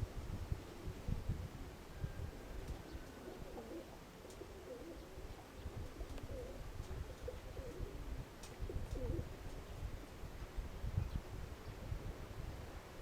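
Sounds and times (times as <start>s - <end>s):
pigeons cooing: 2.5s - 8.0s, 8.7s - 9.4s.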